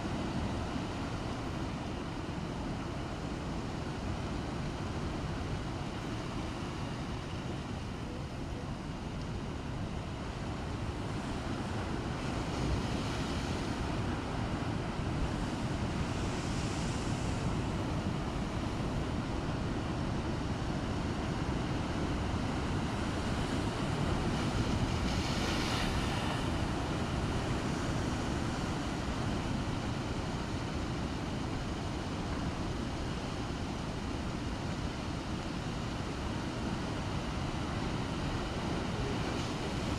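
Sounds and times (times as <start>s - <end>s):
waves breaking: 8.9s - 39.9s.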